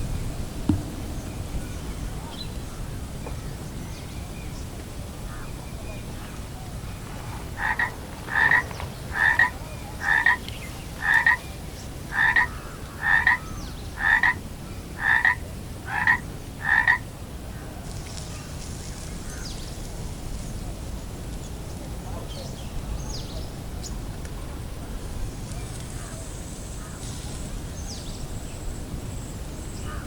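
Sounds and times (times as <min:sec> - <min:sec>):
frog croaking: 0:07.5 - 0:14.4, 0:15.0 - 0:17.0.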